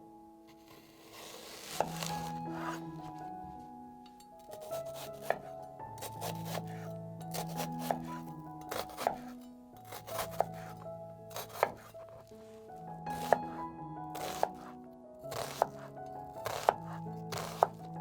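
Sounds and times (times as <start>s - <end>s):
background music: 0.0s - 18.0s
knife chopping on cutting board: 0.7s - 2.8s, 4.5s - 12.2s, 13.1s - 13.4s, 14.2s - 14.7s, 15.3s - 17.8s.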